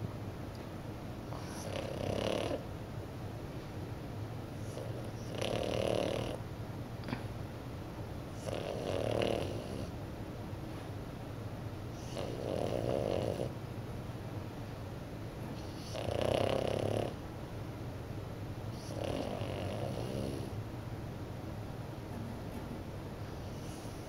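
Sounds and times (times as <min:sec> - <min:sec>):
puppy snoring: 0:01.3 - 0:02.7, 0:04.6 - 0:06.4, 0:08.3 - 0:10.0, 0:11.9 - 0:13.6, 0:15.5 - 0:17.2, 0:18.7 - 0:20.6, 0:23.3 - 0:24.0.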